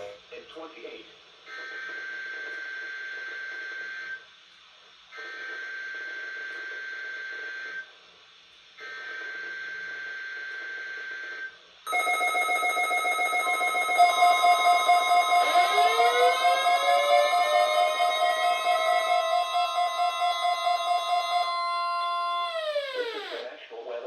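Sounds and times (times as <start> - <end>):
warbling digital data tones: 11.9 - 23.4
weather radio alert beeps: 12.0 - 21.5.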